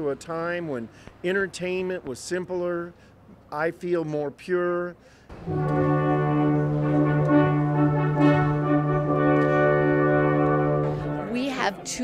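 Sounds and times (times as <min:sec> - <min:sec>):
brass instrument low note: 0:05.3 - 0:11.9.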